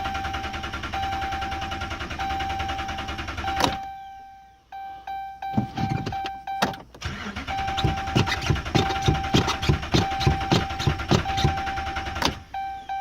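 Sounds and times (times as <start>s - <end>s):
engine cranking without starting: 0.0s - 3.9s, 6.8s - 13.0s
dashboard warning chime: 0.0s - 13.0s.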